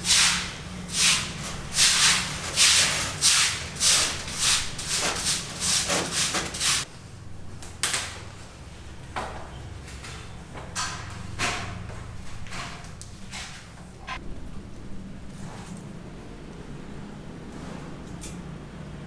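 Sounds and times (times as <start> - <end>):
rasping scraping strokes: 0.0 - 6.9.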